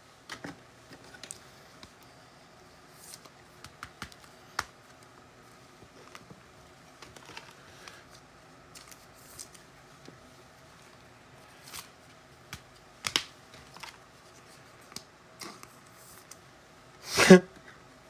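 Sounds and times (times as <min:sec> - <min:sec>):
trading cards clicking and rustling: 0:03.0 - 0:05.0.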